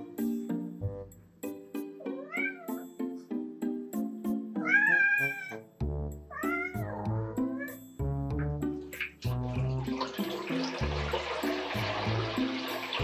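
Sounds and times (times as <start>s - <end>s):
music of plucked notes: 0.0s - 13.0s
kitten meowing: 2.2s - 2.8s, 4.6s - 5.6s, 6.3s - 7.7s.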